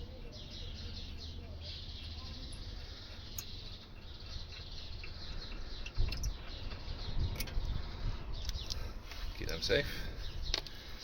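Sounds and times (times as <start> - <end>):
bird chirps: 0.0 - 11.0
light clicks of metal parts: 2.5 - 7.8, 10.5 - 10.8.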